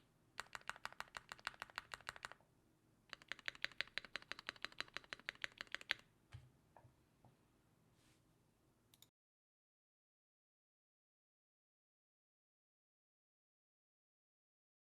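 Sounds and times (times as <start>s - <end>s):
mechanical keyboard typing: 0.4s - 2.4s, 3.1s - 6.0s.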